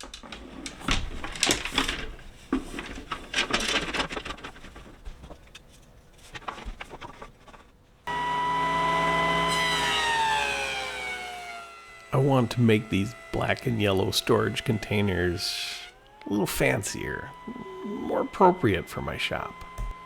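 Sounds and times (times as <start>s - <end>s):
wood and tools clattering: 0.0s - 8.0s
power tool motor running: 8.1s - 20.0s.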